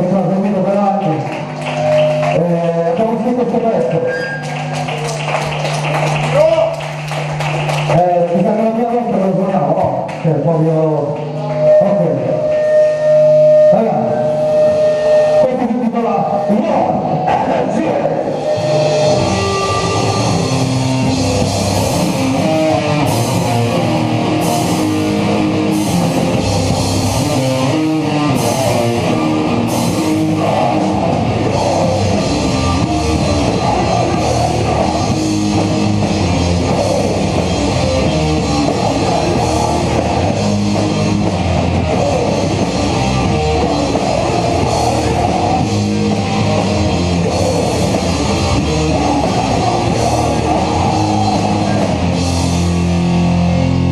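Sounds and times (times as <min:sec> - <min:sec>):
metal band playing live: 0:16.4 - 0:53.9.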